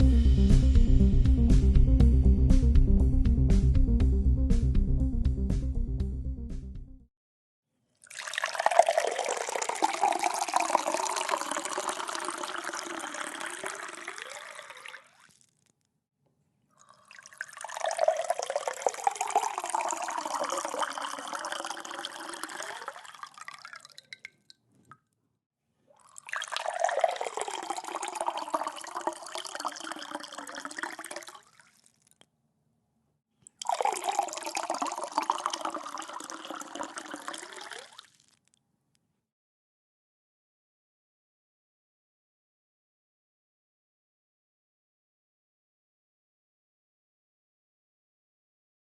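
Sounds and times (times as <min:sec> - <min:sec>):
liquid poured into a glass: 0:08.0 - 0:15.7, 0:16.8 - 0:25.0, 0:25.9 - 0:32.2, 0:33.5 - 0:38.4.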